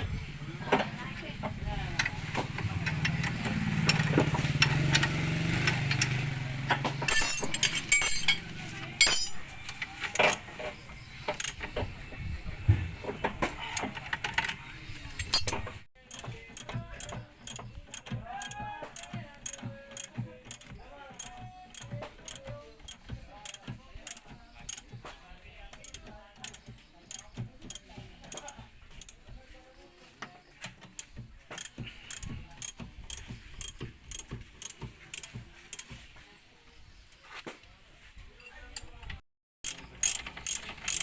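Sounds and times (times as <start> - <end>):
hand tools clinking on metal: 2.0 - 12.2, 13.0 - 29.3, 39.6 - 41.0.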